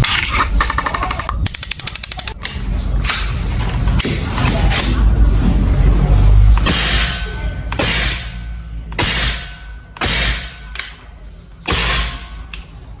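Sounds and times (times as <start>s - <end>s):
air rifle shots with hiss: 7.8s - 8.3s, 11.7s - 12.2s.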